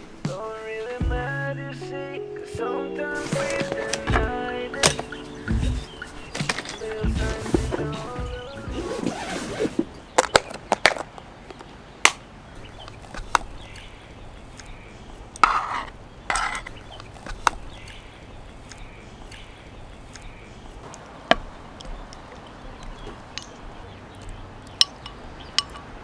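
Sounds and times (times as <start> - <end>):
objects knocking and clicking: 3.2 - 13.9, 15.4 - 18.0, 20.9 - 26.0
rustling: 3.2 - 26.0.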